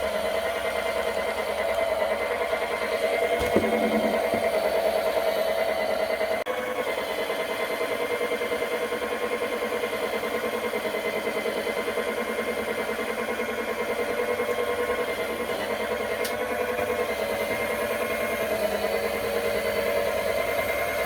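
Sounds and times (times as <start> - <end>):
mop cleaner motor humming: 1.6 - 5.5.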